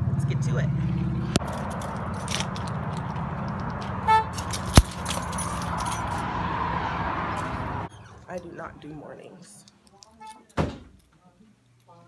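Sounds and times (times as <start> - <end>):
car engine running: 0.0 - 7.9
keys jangling: 1.4 - 6.2.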